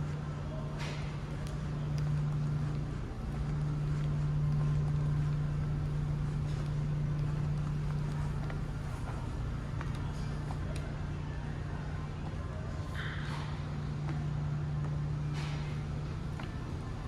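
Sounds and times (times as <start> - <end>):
ship engine drone: 0.0 - 12.9.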